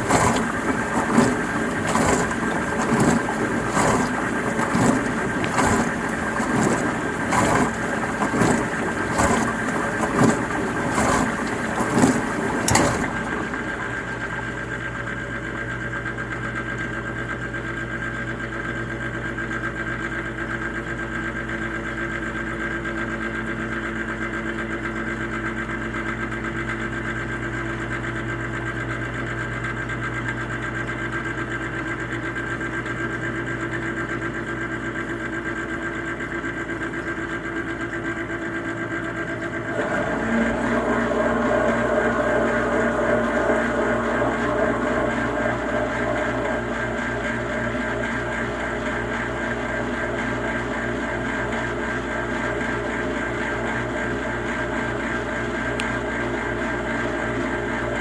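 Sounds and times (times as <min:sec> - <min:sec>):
dishwasher water spraying: 0:00.0 - 0:14.7, 0:39.8 - 0:48.0
dishwasher motor humming: 0:00.0 - 0:58.0.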